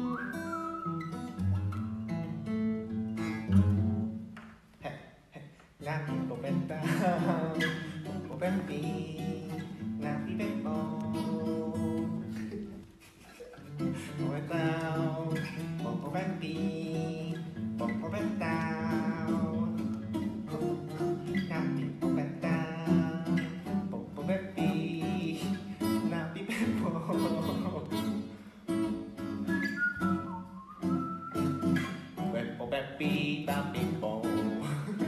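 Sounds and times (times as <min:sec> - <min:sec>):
acoustic guitar: 0:00.0 - 0:35.0
person singing: 0:04.8 - 0:12.7, 0:13.7 - 0:28.4, 0:31.9 - 0:35.0.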